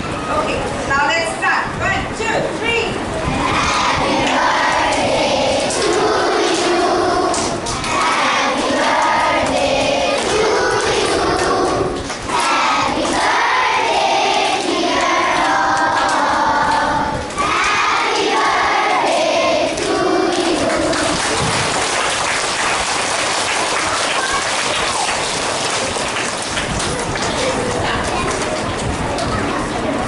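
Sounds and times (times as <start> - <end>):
children singing or chanting: 3.3 - 21.6
children chattering: 23.6 - 30.0.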